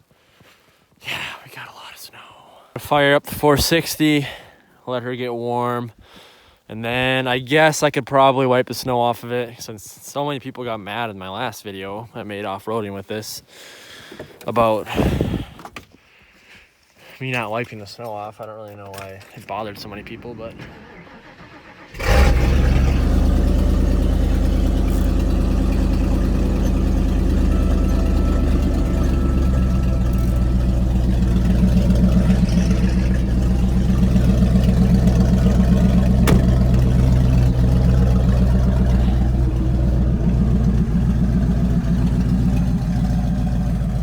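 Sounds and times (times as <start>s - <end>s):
engine starting and idling: 19.7s - 44.0s.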